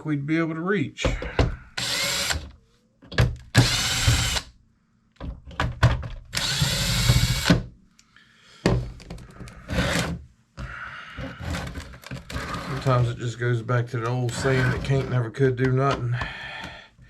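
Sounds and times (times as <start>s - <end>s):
power drill running: 1.8s - 2.5s, 3.5s - 4.5s, 6.3s - 7.6s
clicks and knocks on plastic casing: 5.2s - 6.3s.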